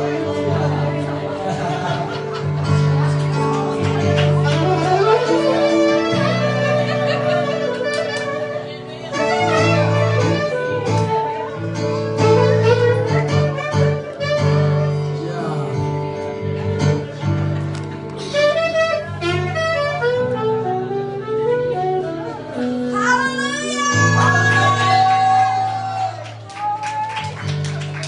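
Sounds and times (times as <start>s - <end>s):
saxophone melody: 0.0s - 2.2s, 2.8s - 26.1s
guitar: 0.0s - 28.0s
violin: 3.4s - 20.4s.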